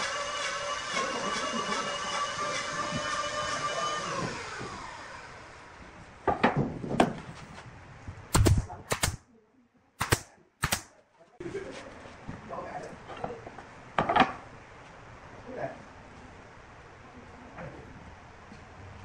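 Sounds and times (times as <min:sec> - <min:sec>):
lathe motor winding down: 0:00.0 - 0:05.8
wooden knocks and clacks: 0:06.2 - 0:07.3.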